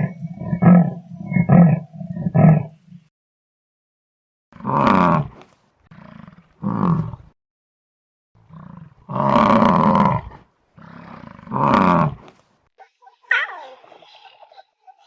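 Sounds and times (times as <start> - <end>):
animal calling: 12.8 - 15.0.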